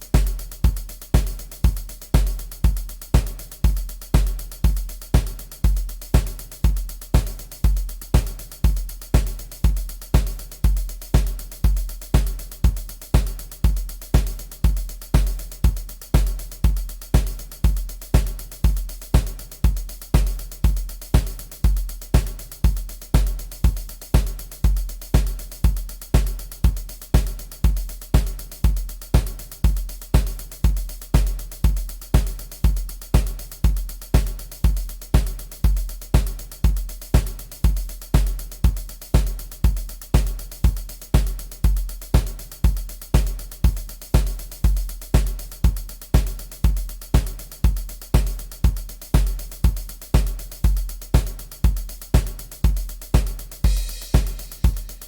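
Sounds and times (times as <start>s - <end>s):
programmed drum beat: 0.0s - 55.0s.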